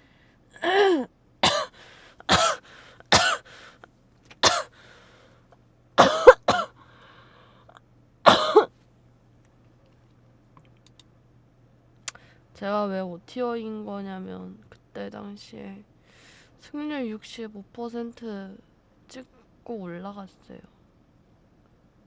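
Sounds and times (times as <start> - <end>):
woman coughing: 0.6 - 3.5, 4.4 - 4.7, 6.0 - 6.7, 8.3 - 8.7.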